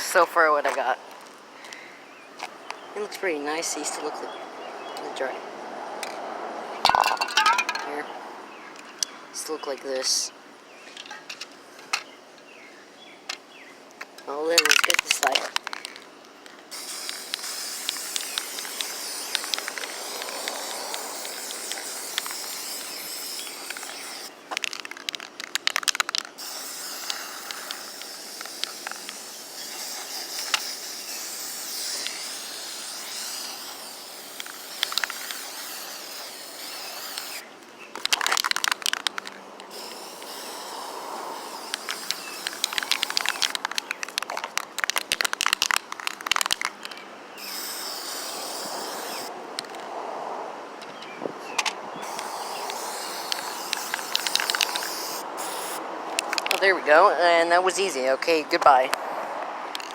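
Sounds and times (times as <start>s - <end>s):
spray paint can hissing: 16.7s - 24.4s, 26.0s - 44.3s, 47.4s - 49.3s, 52.0s - 56.7s.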